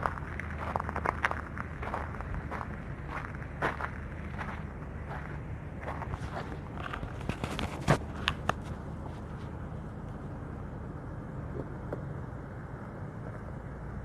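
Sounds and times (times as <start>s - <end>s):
footsteps: 0.0s - 9.5s
low rumble: 0.0s - 14.0s.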